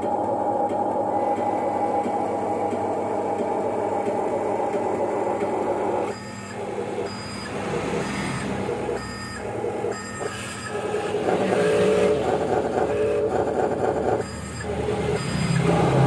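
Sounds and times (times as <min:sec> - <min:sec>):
model motor and pump whine: 0:00.0 - 0:16.0
electronic reversing beeper: 0:06.1 - 0:13.3, 0:14.2 - 0:15.7.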